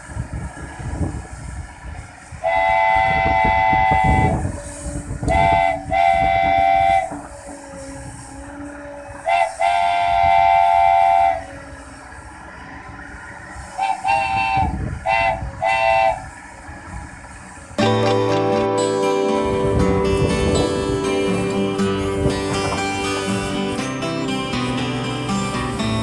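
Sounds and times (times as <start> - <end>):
multi-tone air horn blasts: 2.4 - 12.0, 13.7 - 16.4, 17.8 - 24.0.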